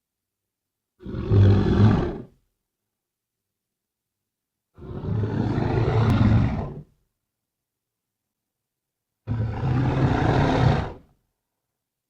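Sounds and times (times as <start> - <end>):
deep rough creature roar: 1.0 - 2.3, 4.8 - 6.9, 9.3 - 11.1.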